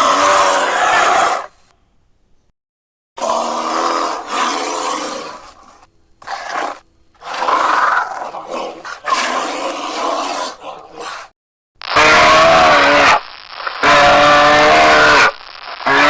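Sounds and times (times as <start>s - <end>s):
bear calling: 11.8s - 16.0s.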